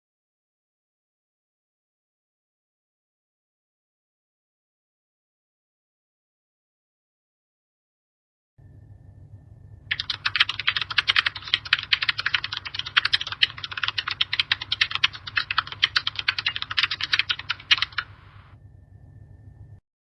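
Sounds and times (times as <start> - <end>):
faint low hum: 8.6 - 19.8
fast typing on keyboard: 9.9 - 18.6.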